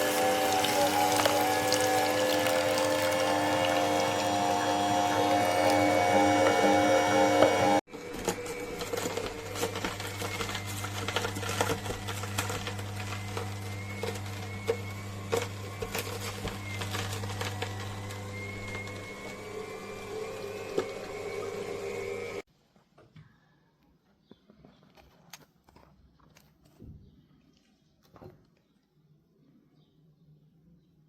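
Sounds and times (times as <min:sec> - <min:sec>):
juicer motor hum: 0:00.0 - 0:22.4
produce crushing clicks and crackles: 0:00.1 - 0:19.1, 0:24.6 - 0:28.9.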